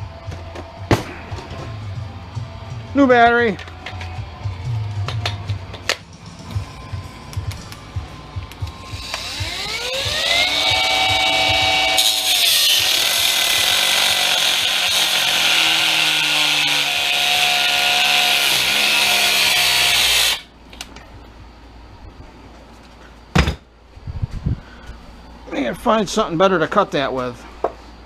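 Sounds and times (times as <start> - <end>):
cutoff wheel cutting metal: 8.8 - 20.5.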